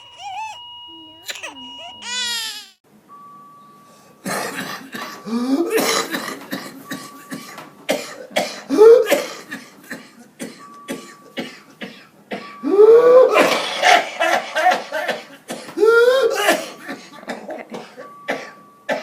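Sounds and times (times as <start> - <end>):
child coughing rapidly: 0.0 - 0.6, 1.2 - 2.7.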